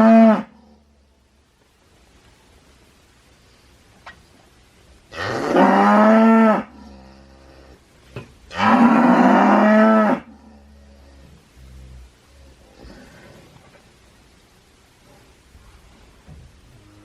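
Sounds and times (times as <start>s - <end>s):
cow mooing: 0.0s - 0.6s, 5.1s - 7.8s, 8.5s - 11.2s.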